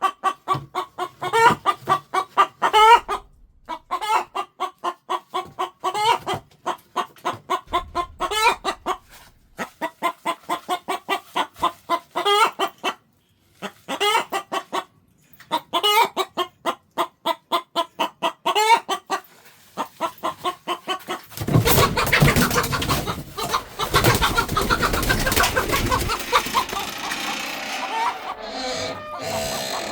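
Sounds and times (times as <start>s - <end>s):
chicken clucking: 0.0s - 29.9s
loud dense sound: 7.7s - 9.6s.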